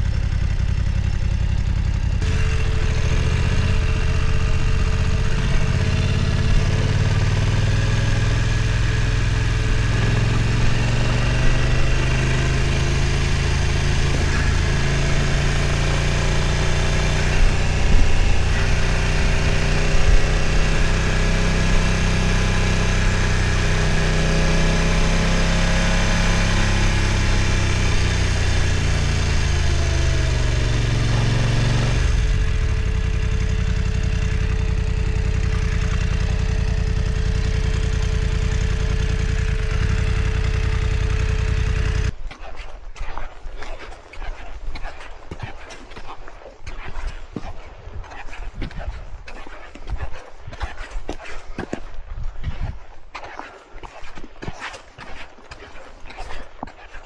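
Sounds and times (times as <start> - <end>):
motorcycle engine running: 0.0 - 42.2.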